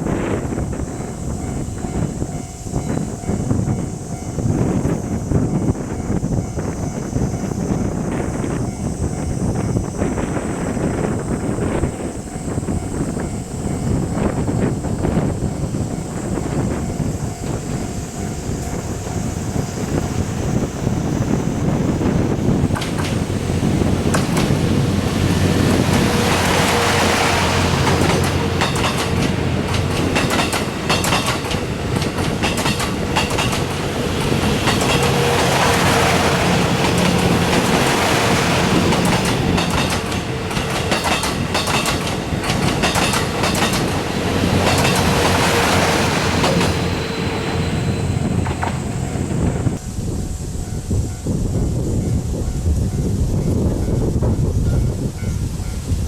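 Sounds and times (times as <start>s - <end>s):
train wheels clattering over rails: 6.8s - 49.8s.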